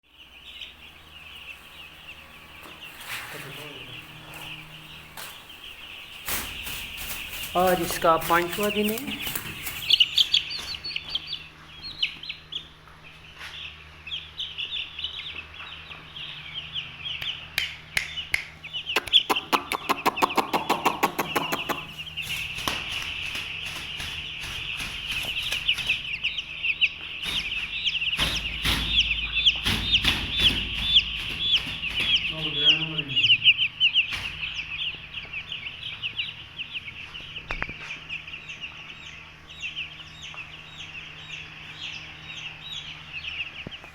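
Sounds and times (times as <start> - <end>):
chicks peeping: 0.0 - 43.9
rapid low calls: 18.6 - 36.5.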